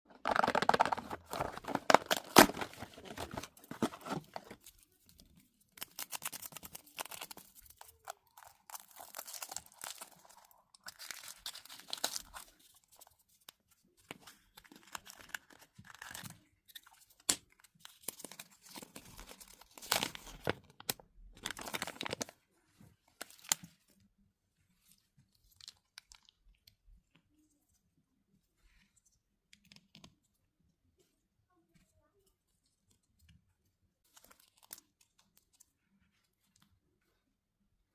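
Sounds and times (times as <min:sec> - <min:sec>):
foil wrapper tearing and crinkling: 0:00.2 - 0:04.5, 0:05.8 - 0:12.6.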